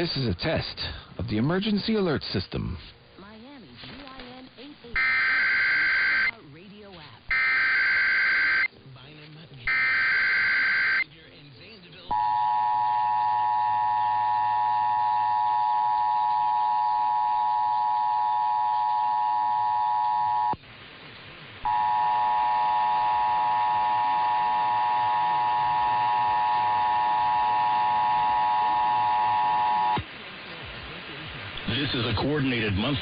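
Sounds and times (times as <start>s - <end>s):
two-tone alert alarm: 5.0s - 6.3s, 7.3s - 8.7s, 9.7s - 11.0s, 12.1s - 20.6s.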